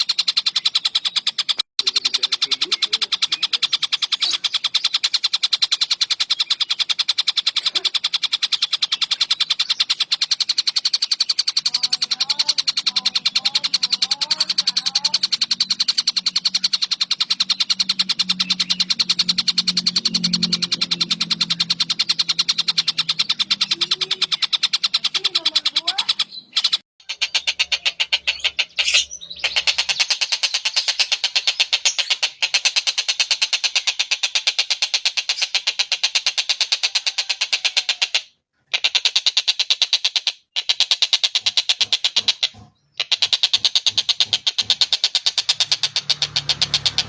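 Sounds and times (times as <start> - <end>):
sparrows chirping: 0.0 - 47.0
low hum: 15.2 - 23.8.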